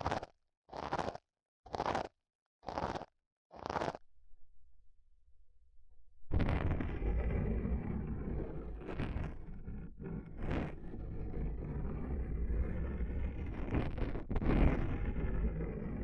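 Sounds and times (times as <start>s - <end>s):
low rumbling rub: 6.0s - 16.0s.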